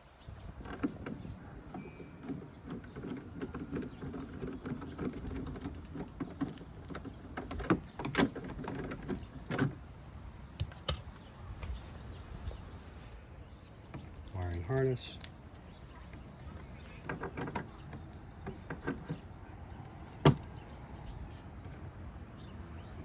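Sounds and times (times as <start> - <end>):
plastic rattle and scrape: 0.5 - 9.8, 15.4 - 19.3
sharp plastic clicks and knocks: 0.6 - 9.8.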